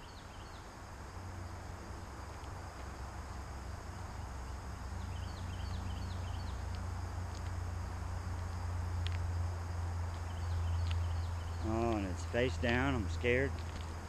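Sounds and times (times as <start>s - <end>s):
small birds chirping: 0.0s - 0.7s, 3.9s - 7.6s, 10.1s - 14.0s
steady low rumble: 0.8s - 14.0s.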